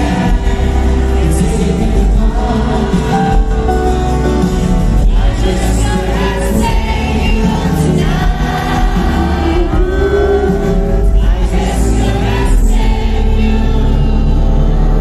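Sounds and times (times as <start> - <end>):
amplified live band: 0.0 - 15.0
person singing: 0.0 - 15.0.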